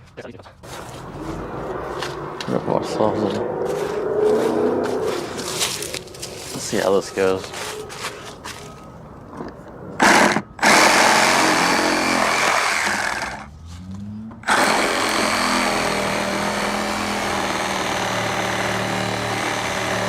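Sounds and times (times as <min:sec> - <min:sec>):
power tool motor running: 0:10.0 - 0:13.5, 0:14.4 - 0:20.0.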